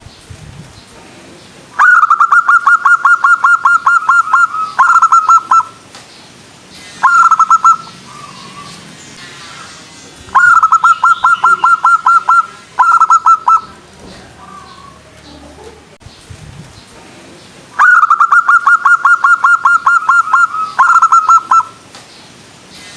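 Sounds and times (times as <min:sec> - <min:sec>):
dove cooing rapidly: 0:01.8 - 0:05.8, 0:07.0 - 0:08.8, 0:10.3 - 0:15.9, 0:17.8 - 0:21.7.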